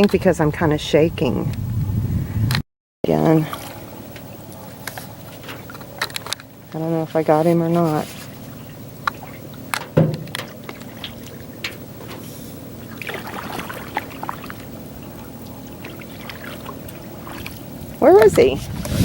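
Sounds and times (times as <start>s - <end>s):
water lapping around a canoe: 3.1s - 19.0s
sharp knocks: 9.8s - 10.5s.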